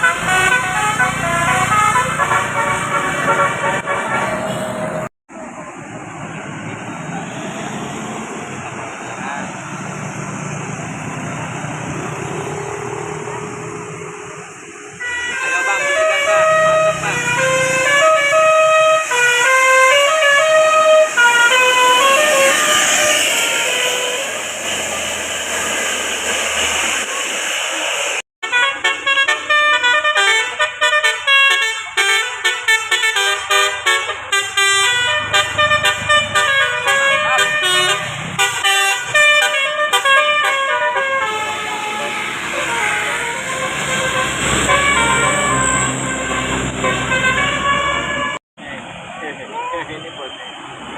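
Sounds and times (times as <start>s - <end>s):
bus diesel engine running: 0.0s - 50.9s
road traffic noise: 0.0s - 50.9s.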